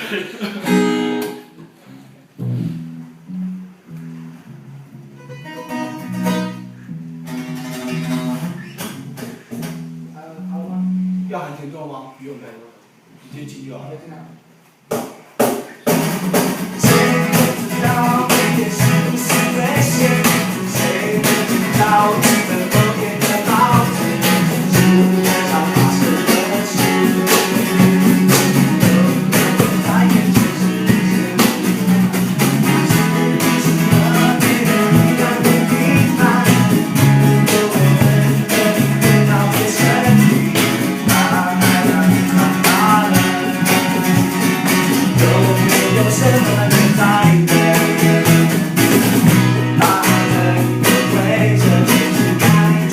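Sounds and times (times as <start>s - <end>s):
guitars: 0.0s - 11.7s, 14.3s - 52.9s
bass notes: 0.7s - 11.8s, 15.9s - 52.9s
drum kit hits: 14.9s - 52.9s
live rock band playing: 15.9s - 52.9s.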